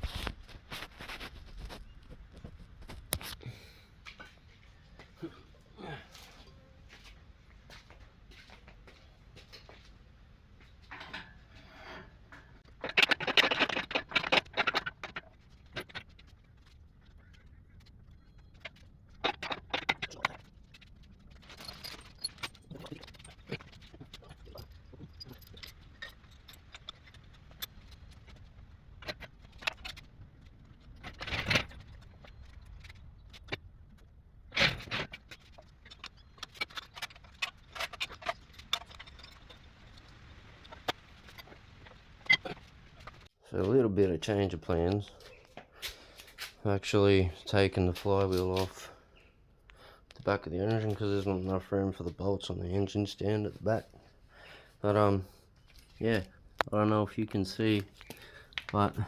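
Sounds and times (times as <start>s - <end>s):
metallic clicks and rattles: 12.3s - 43.3s.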